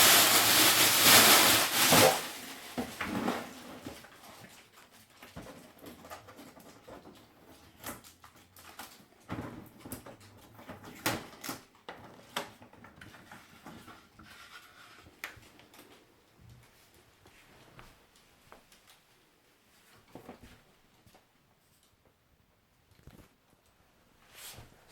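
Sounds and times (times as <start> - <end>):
packaging rustling and scraping: 0.0 - 15.9.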